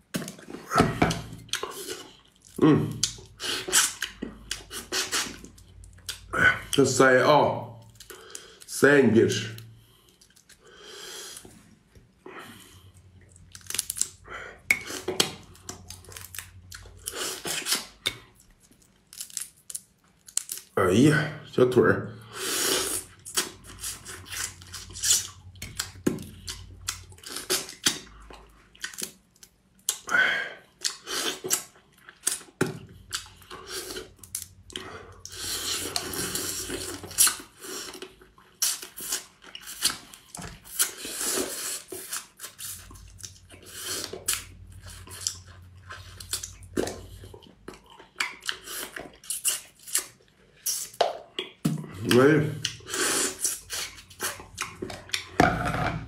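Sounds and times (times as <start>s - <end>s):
chewing: 22.9s - 55.4s.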